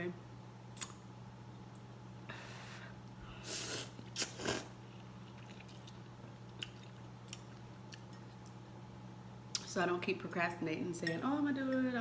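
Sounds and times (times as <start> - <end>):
noodle slurp: 3.5 - 4.7.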